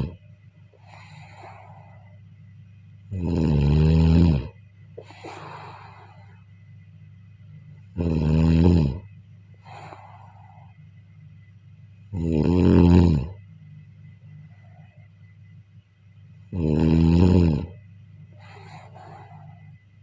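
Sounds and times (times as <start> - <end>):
soft breath out: 0.7 - 2.4, 5.0 - 6.6, 9.5 - 11.0, 18.3 - 20.0
person snoring: 3.1 - 6.4, 7.9 - 10.7, 12.1 - 13.4, 16.5 - 17.8, 18.4 - 19.7.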